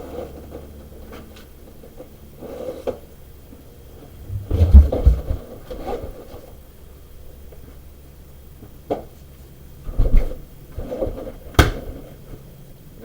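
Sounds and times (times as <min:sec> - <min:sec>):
heavy deep thud: 0:04.2 - 0:05.4.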